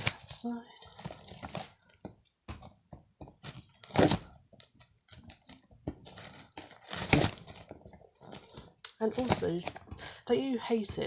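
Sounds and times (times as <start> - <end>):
cardboard packaging rustling: 0.0 - 10.2
cardboard ripping: 3.4 - 4.3, 5.2 - 9.8.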